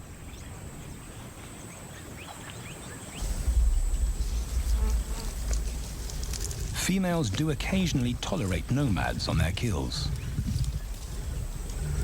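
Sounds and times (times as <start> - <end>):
high insect whine: 3.2 - 6.8
loud low rumble: 3.2 - 9.2.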